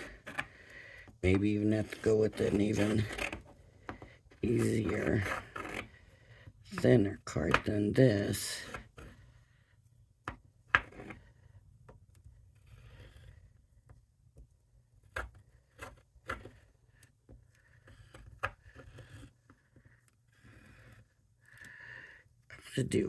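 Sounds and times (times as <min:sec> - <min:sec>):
paper scraping and rustling: 0:01.2 - 0:03.6, 0:04.4 - 0:06.0.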